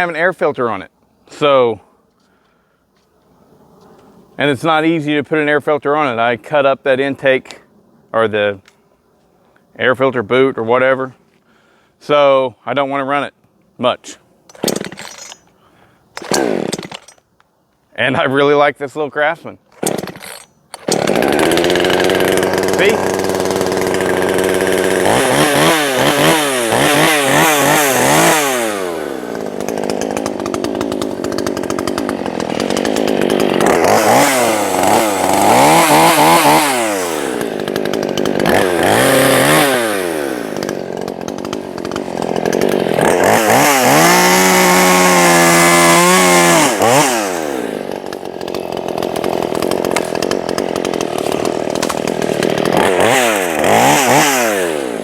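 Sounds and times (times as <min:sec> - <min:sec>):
chainsaw engine revving: 0:14.5 - 0:15.4, 0:16.2 - 0:17.2, 0:19.8 - 0:55.0.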